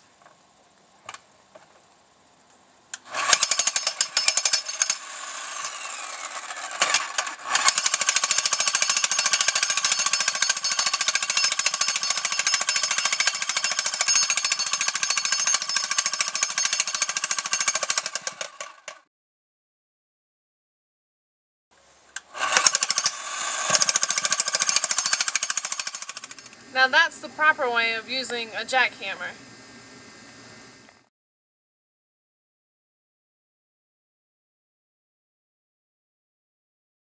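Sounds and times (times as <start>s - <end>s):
jackhammer hammering: 3.0s - 19.0s, 22.3s - 26.6s.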